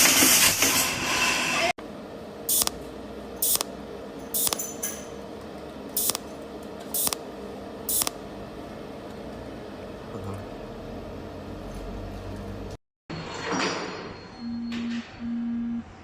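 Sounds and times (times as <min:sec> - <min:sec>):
steady machine hum: 0:01.8 - 0:12.8.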